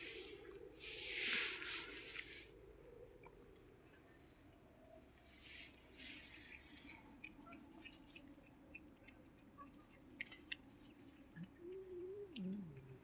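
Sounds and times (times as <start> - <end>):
cat chewing food: 6.2 - 13.0.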